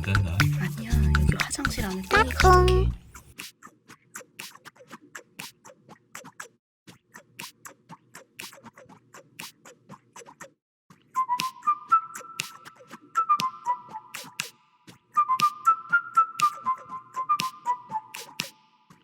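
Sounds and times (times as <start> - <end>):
music with whistled tune: 0.0 - 2.8, 11.1 - 19.0.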